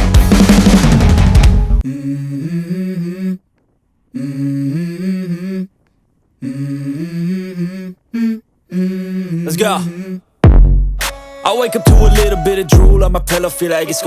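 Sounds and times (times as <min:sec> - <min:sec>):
rock music with drums: 0:00.0 - 0:01.8
person humming: 0:01.8 - 0:03.4, 0:04.2 - 0:05.7, 0:06.4 - 0:10.3.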